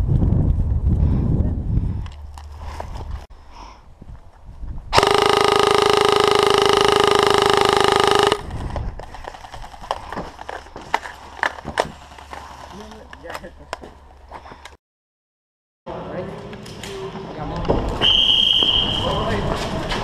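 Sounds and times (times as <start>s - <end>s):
loud steady horn blast: 5.0s - 8.4s.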